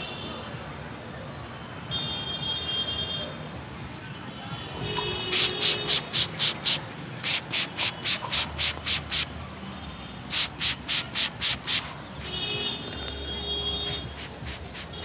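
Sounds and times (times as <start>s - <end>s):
hands rubbing hair: 5.3s - 9.3s, 10.3s - 11.9s.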